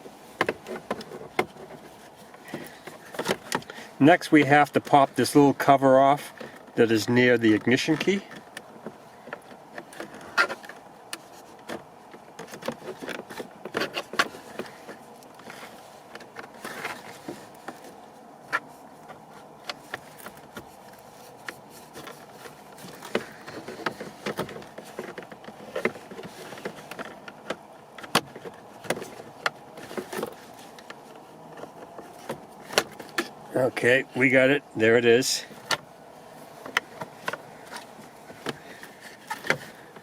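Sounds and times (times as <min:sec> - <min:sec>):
steady faint hum: 0:00.0 - 0:40.0.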